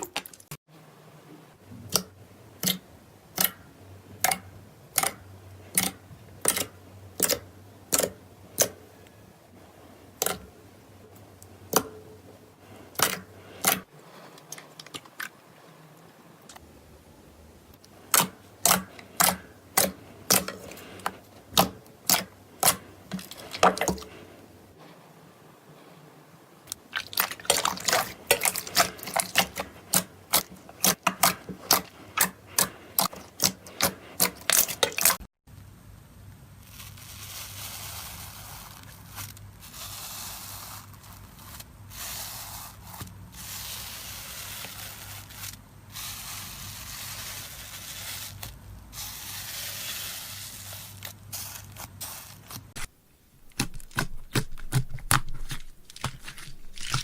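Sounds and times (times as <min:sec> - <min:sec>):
slime clicking and popping: 0:53.5 - 0:57.0.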